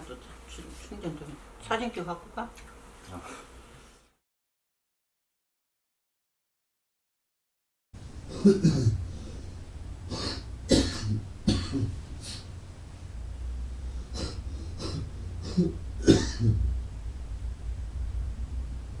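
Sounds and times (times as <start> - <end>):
person clearing throat: 8.3 - 9.0, 10.1 - 12.5, 14.1 - 16.7
person coughing: 10.1 - 12.4, 14.2 - 16.6.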